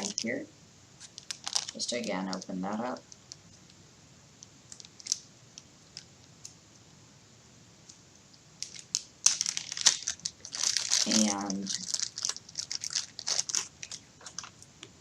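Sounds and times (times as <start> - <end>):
plastic bag crinkling: 0.0 - 0.4, 1.0 - 3.4, 4.7 - 5.2, 8.6 - 14.6.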